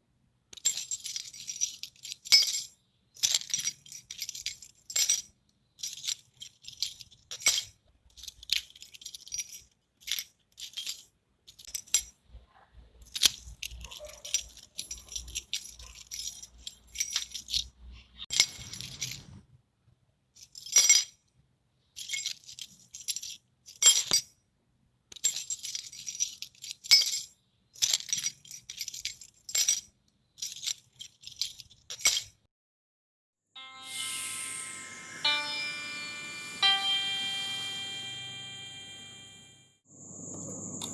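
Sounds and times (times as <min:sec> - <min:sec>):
metal keys jangling: 0:00.5 - 0:12.1, 0:13.0 - 0:19.4, 0:20.4 - 0:21.1, 0:22.0 - 0:24.3, 0:25.1 - 0:32.4.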